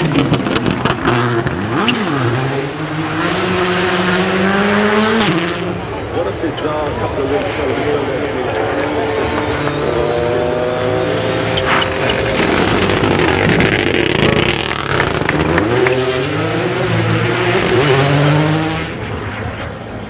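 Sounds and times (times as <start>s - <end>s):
tyres on gravel: 0.0s - 19.6s
rally car engine at full throttle: 0.0s - 20.0s.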